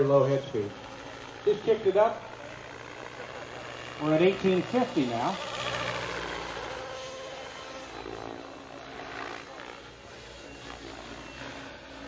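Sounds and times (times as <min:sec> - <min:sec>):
rc helicopter rotor hum: 0:00.0 - 0:12.0.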